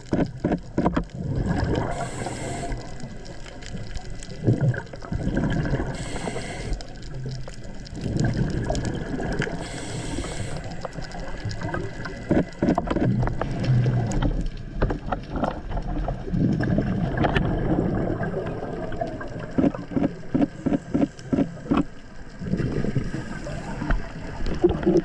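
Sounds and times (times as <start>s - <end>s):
underwater clicks: 0.0s - 17.7s, 18.4s - 22.0s
exhaled bubbles rumbling: 0.0s - 25.0s
steady underwater rumble: 0.0s - 25.0s
regulator inhalation hisses: 1.8s - 3.1s, 6.0s - 7.0s, 9.5s - 11.1s.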